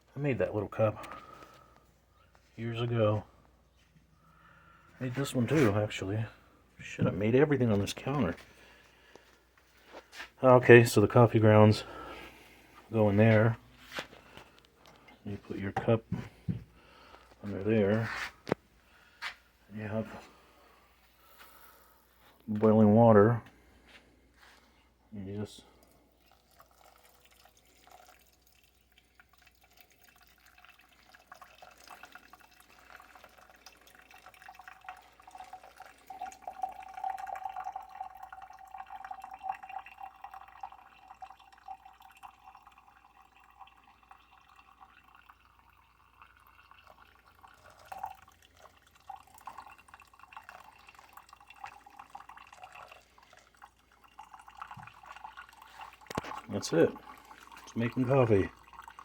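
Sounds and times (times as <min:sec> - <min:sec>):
hot water pouring: 0:00.0 - 0:03.5, 0:04.3 - 0:59.0
coffee trickling and dripping: 0:00.0 - 0:59.0
faint ringing tone of stream: 0:29.7 - 0:55.8.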